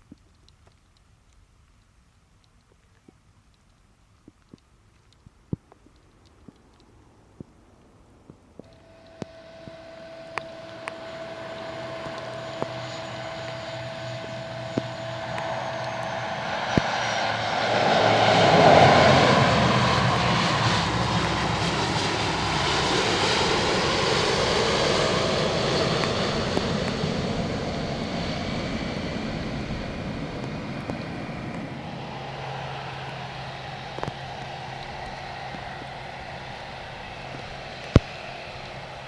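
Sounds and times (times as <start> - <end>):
airliner engines passing: 8.6 - 39.0.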